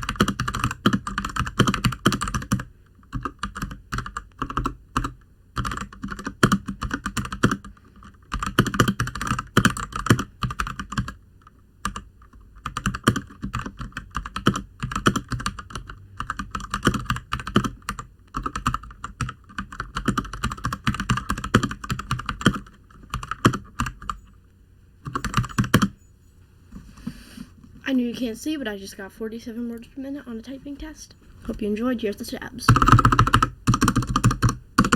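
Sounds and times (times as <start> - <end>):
mechanical keyboard typing: 0.0 - 11.2, 11.8 - 24.3, 25.0 - 26.0, 32.6 - 34.9.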